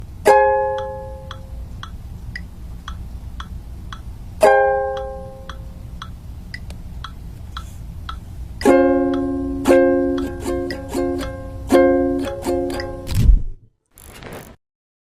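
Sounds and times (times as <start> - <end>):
light ticking beat: 0.0 - 13.1
ukulele chord ringing: 0.2 - 1.6, 4.4 - 6.1, 8.6 - 13.1.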